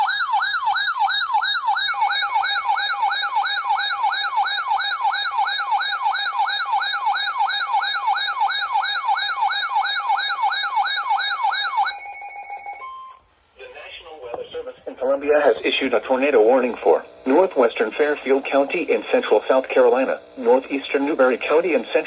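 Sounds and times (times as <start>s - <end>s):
steady alarm tones: 0.0s - 13.2s, 14.8s - 22.0s.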